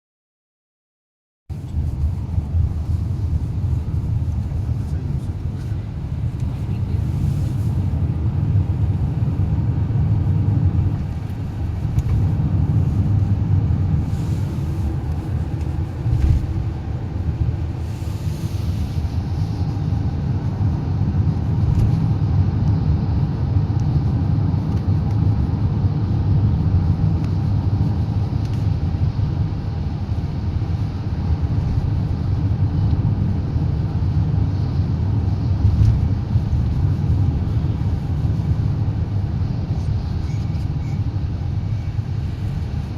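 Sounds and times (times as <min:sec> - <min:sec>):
engine and road rumble: 0:01.5 - 0:42.9.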